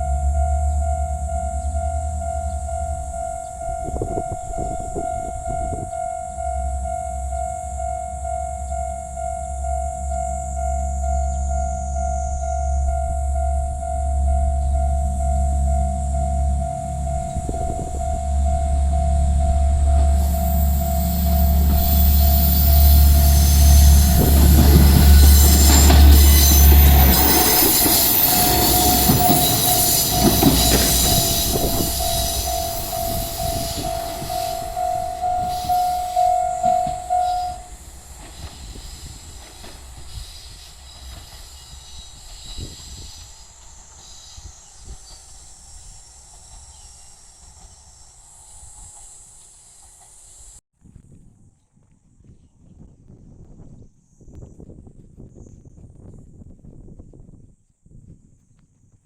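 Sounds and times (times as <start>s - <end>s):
level crossing warning bell: 0.0s - 41.3s
diesel railcar passing: 0.0s - 50.6s.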